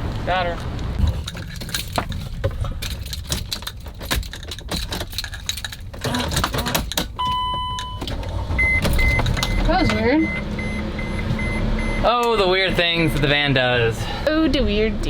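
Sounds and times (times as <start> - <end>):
keys jangling in ignition: 1.0 - 10.4
steady electronic beep: 8.6 - 13.3.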